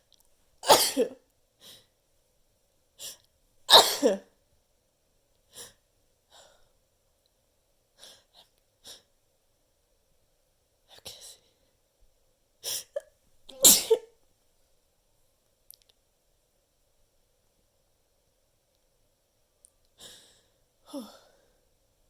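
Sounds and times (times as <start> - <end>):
person sneezing: 0.6 - 1.2, 3.7 - 4.2, 12.7 - 14.1.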